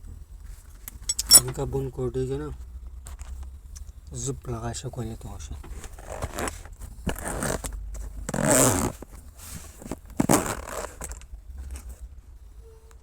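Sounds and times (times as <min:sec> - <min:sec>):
zipper pulled: 0:06.1 - 0:07.7, 0:08.3 - 0:09.0, 0:10.2 - 0:11.1.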